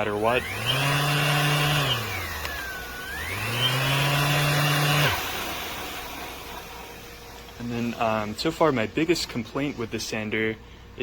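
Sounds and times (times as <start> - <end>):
orbital sander motor whining: 0.0 - 8.4.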